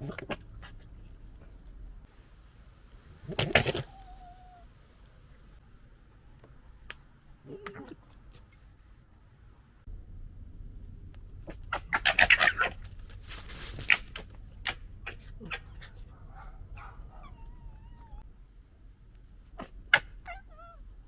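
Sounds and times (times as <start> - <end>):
soft fox calls: 3.2 - 9.7, 11.4 - 18.3, 19.3 - 21.0
foxes gekkering chatter: 11.6 - 13.0, 14.6 - 18.2.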